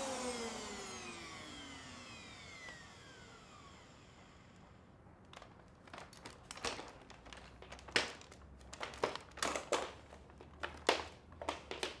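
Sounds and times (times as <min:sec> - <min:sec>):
crinkling and rustling handling: 0:05.0 - 0:12.0.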